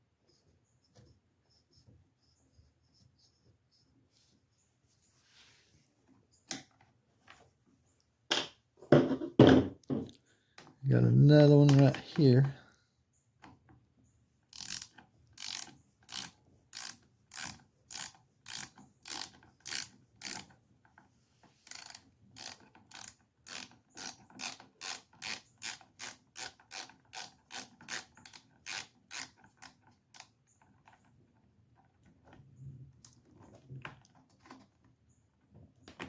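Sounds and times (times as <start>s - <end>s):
hand ratchet clicking: 14.5s - 20.5s, 21.6s - 31.0s.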